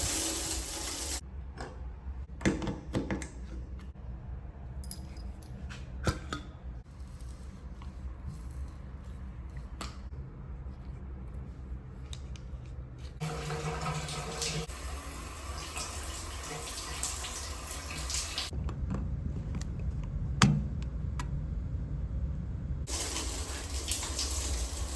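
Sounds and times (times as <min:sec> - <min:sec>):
water running from faucet: 0:00.0 - 0:01.2, 0:13.2 - 0:18.5, 0:22.9 - 0:24.9
low hum in pipes: 0:00.0 - 0:24.9.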